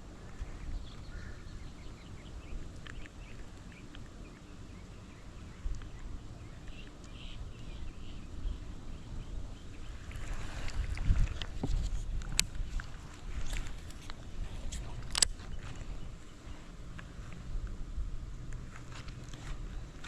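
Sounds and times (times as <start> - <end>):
wind rumble on microphone: 0.0 - 20.0
faint bird chirps: 0.5 - 10.1.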